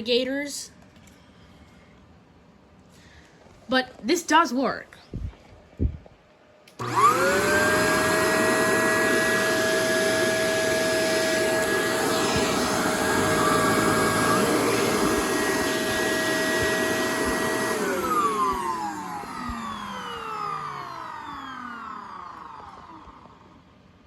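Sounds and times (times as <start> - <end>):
vacuum cleaner motor whine: 6.7 - 23.8
rushing airflow: 6.8 - 21.3.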